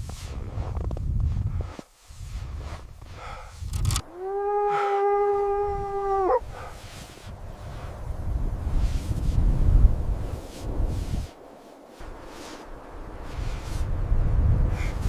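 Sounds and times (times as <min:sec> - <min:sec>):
howl-like animal call: 0:04.0 - 0:06.5.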